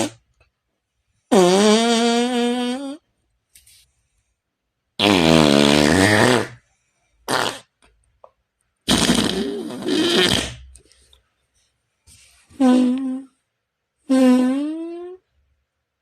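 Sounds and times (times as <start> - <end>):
imitation fart sounds: 0.0 - 0.2, 1.3 - 3.1, 5.0 - 6.6, 7.3 - 7.8, 8.8 - 10.8, 12.6 - 13.3, 14.1 - 15.2.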